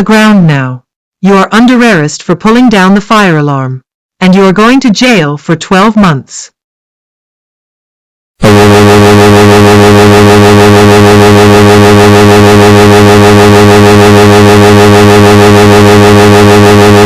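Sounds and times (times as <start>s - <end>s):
loud steady electronic buzz: 8.4s - 17.0s.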